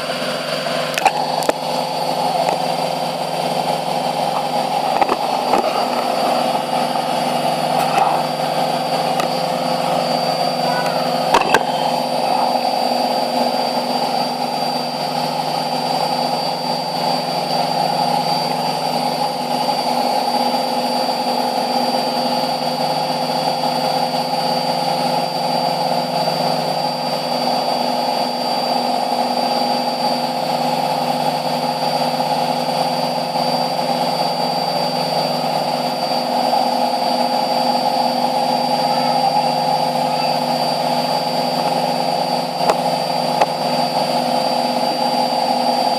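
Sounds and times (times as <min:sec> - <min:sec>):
high whine: 0:00.0 - 0:22.1, 0:35.7 - 0:45.9
washing machine spinning hum: 0:00.0 - 0:45.9.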